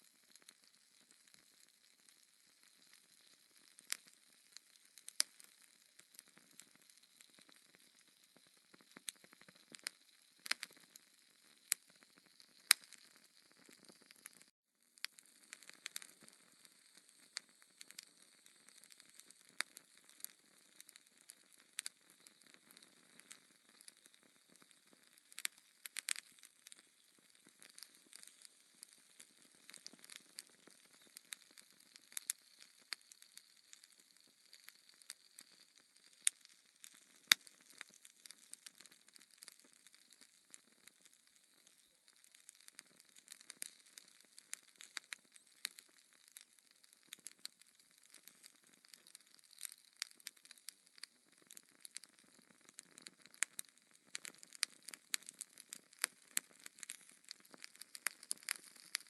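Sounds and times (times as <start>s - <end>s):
fireplace logs crackling: 54.2s - 54.7s, 56.8s - 59.0s.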